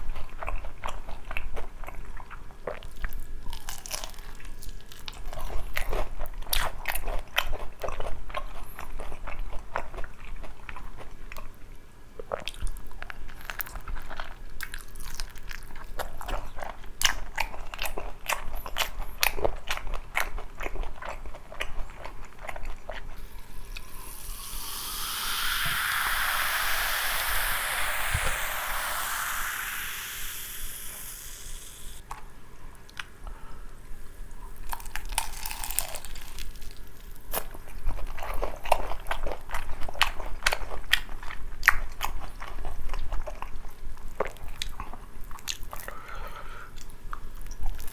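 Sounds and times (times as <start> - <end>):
crunching and chewing fried chicken: 0.0 - 28.2, 34.4 - 47.9
rushing hiss: 23.2 - 32.0.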